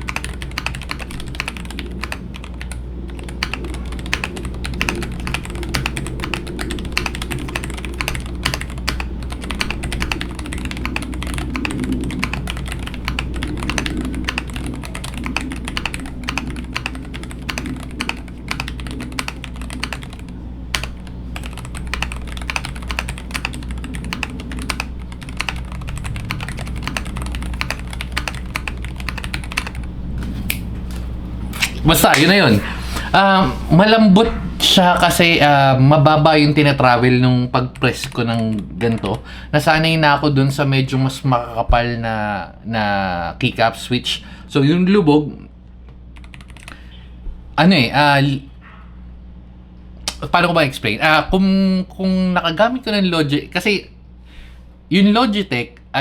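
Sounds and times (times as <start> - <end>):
mechanical keyboard typing: 0.0 - 30.7, 37.8 - 39.2, 46.2 - 46.8.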